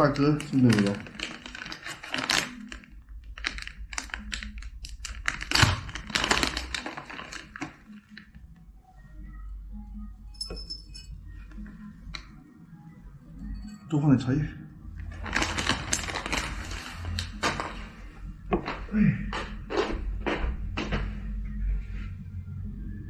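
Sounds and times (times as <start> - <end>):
tea packet rustling: 0.0 - 8.4, 15.0 - 18.0.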